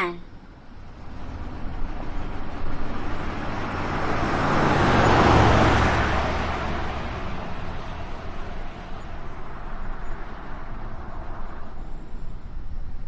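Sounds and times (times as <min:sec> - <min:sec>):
van driving past: 0:00.6 - 0:13.0.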